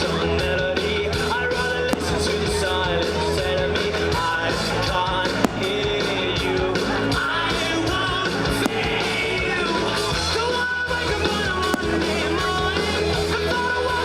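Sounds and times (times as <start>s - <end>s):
rock music with singing: 0.0s - 14.0s
sharp hits: 2.0s - 2.7s, 5.5s - 6.3s.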